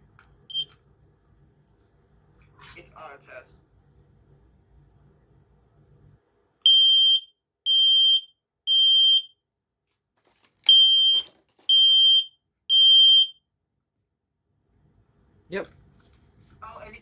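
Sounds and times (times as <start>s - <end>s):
smoke alarm high beeps: 0.5s - 0.7s, 6.7s - 9.4s, 10.7s - 13.5s.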